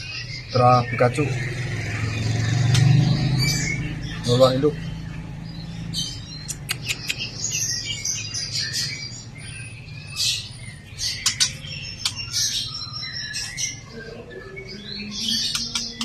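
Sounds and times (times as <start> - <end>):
bird chirping and clicking: 0.2 - 13.8, 15.1 - 16.0.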